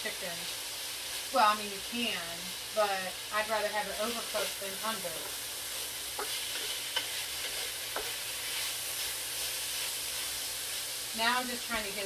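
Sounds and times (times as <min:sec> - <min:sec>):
chicken sizzling in a skillet: 0:00.0 - 0:12.0.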